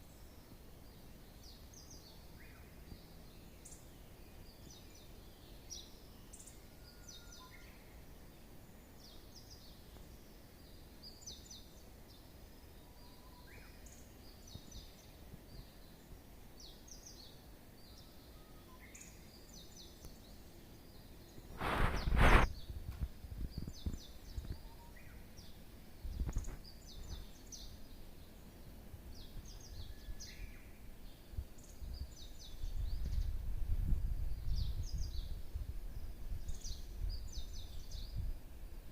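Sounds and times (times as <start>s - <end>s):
small bird chirping: 0.0s - 38.3s
low rumble on microphone: 21.4s - 24.8s, 31.3s - 38.8s.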